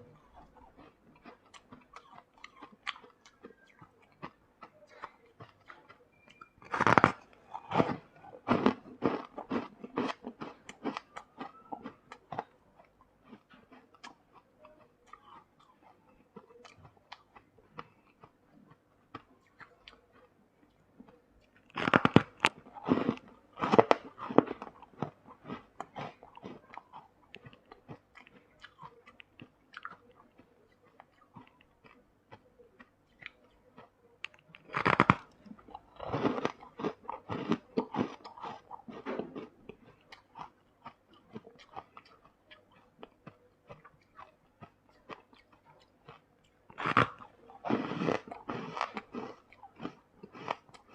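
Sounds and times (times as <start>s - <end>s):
person biting and chewing ice: 0.1s - 4.4s, 5.4s - 12.5s, 21.6s - 32.4s, 33.2s - 50.9s.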